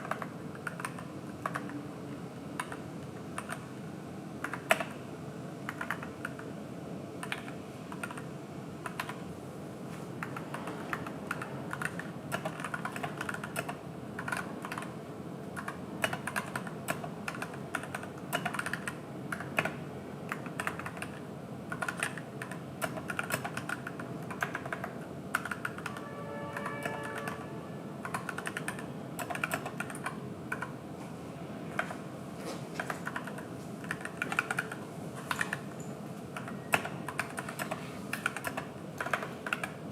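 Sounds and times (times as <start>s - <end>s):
mechanical keyboard typing: 0.0s - 1.8s, 2.6s - 2.8s, 3.4s - 3.7s, 4.4s - 5.0s, 5.7s - 6.5s, 7.2s - 9.2s, 10.2s - 15.0s, 15.6s - 27.4s, 28.0s - 30.8s, 32.8s - 35.7s, 36.4s - 39.8s.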